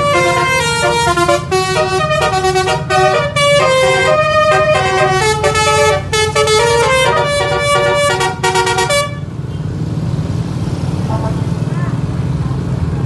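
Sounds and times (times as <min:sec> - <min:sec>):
multi-tone bus horn tune: 0:00.0 - 0:09.3, 0:11.0 - 0:11.5
engine hum: 0:00.0 - 0:13.0.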